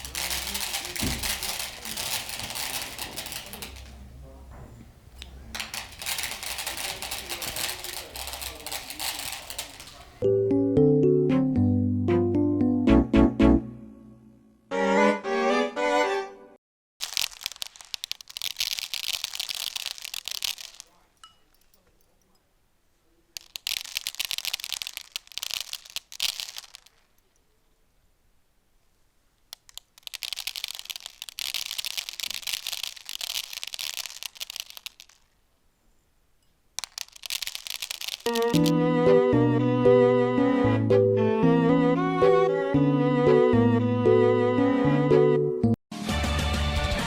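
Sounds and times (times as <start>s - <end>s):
crackling crumpling by hand: 0.0s - 10.2s, 17.0s - 21.2s, 23.3s - 27.4s, 29.4s - 35.4s, 36.8s - 38.7s.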